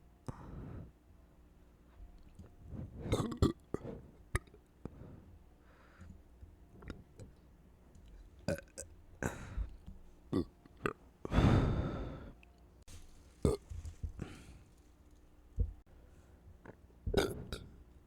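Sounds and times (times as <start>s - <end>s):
person burping: 3.1s - 3.6s, 10.3s - 11.0s, 13.4s - 13.6s, 17.1s - 17.7s.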